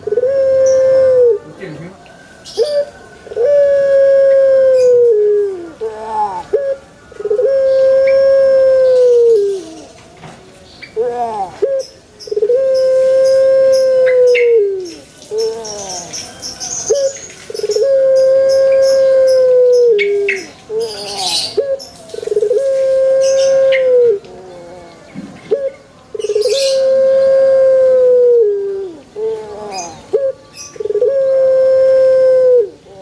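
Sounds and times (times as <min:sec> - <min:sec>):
dove cooing: 0:00.0 - 0:10.0, 0:10.8 - 0:33.0
small birds chirping: 0:05.6 - 0:27.4, 0:28.9 - 0:31.1.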